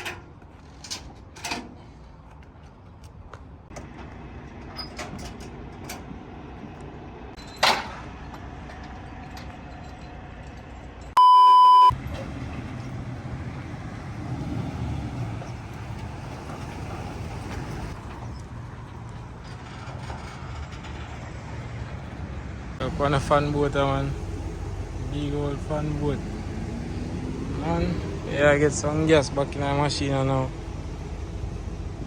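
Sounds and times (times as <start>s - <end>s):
vehicle engine rumble: 0.0s - 11.2s, 11.8s - 32.0s
censor bleep: 11.2s - 12.0s.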